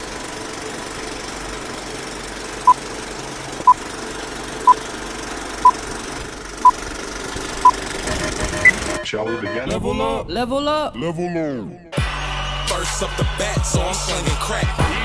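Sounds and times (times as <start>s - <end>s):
short electronic beeps: 7.6s - 9.7s.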